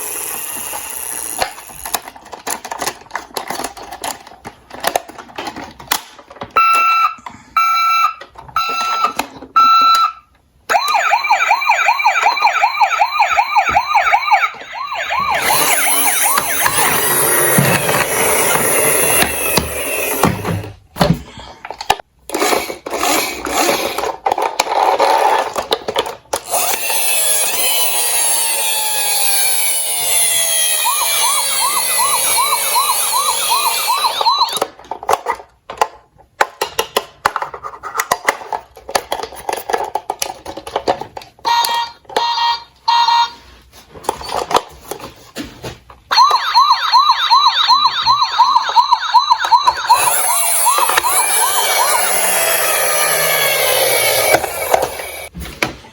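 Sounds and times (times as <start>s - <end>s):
toy cars rolling and knocking: 0.0s - 7.4s, 14.8s - 42.5s, 43.9s - 45.4s, 46.0s - 55.7s
toy electronic sirens wailing: 6.6s - 20.7s, 26.5s - 34.7s, 41.5s - 43.4s, 46.1s - 55.3s.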